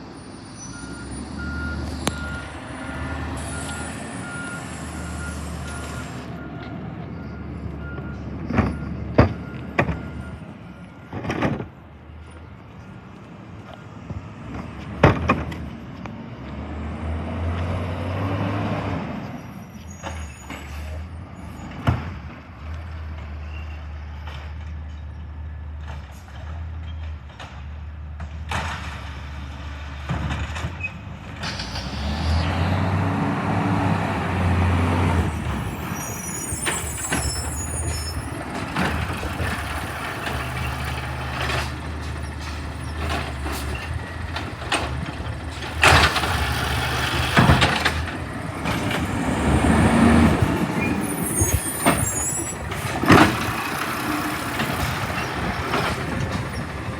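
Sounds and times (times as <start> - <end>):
garbage truck engine revving: 0.9 - 6.6, 31.3 - 56.9
brief high squeaks: 19.4 - 21.8, 35.3 - 39.0, 50.8 - 53.0.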